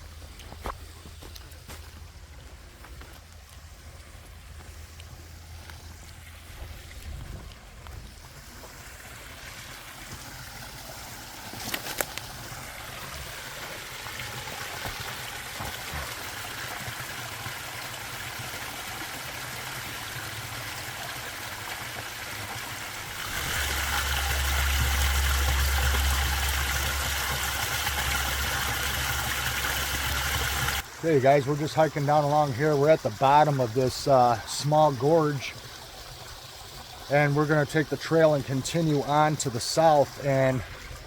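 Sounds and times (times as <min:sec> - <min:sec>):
creek water over small waterfall: 0:00.0 - 0:41.0
low rumble: 0:23.1 - 0:29.8.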